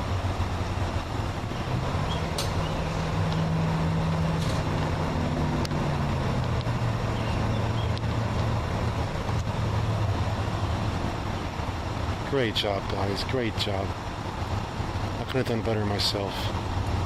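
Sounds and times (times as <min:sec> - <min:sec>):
locomotive engine humming: 0:00.0 - 0:17.0.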